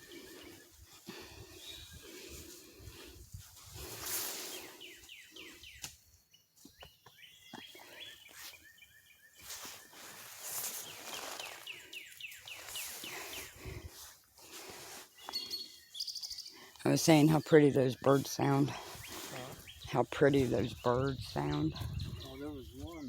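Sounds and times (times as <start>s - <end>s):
songbird singing: 0.0s - 3.1s, 3.8s - 23.0s
rustling footsteps in woods: 0.0s - 23.0s.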